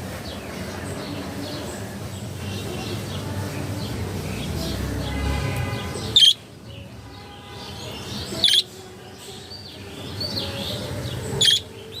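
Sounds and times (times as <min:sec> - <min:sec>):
budgerigar chirps: 0:11.4 - 0:11.7.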